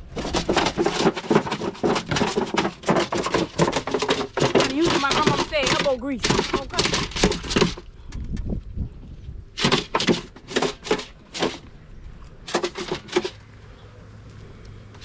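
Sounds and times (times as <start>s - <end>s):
chickens flapping and scuffling: 0.0s - 7.9s, 9.6s - 11.7s, 12.4s - 13.6s.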